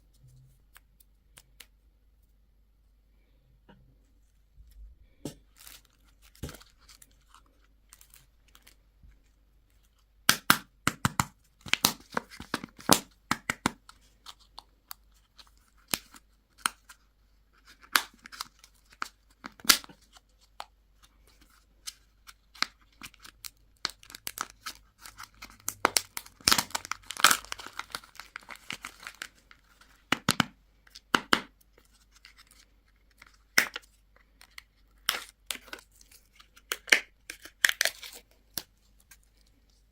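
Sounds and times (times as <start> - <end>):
candy wrappers crinkling: 4.7 - 10.0, 17.6 - 39.9.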